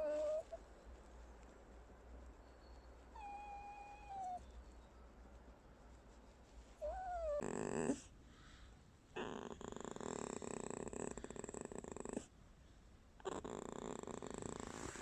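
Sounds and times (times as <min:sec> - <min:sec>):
fox whining: 0:00.0 - 0:00.6, 0:03.1 - 0:04.4, 0:06.8 - 0:08.1.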